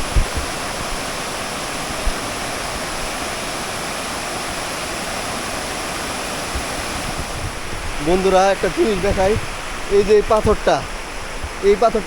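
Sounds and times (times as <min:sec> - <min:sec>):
waterfall rushing: 0:00.0 - 0:12.0
low bumps: 0:06.6 - 0:12.0.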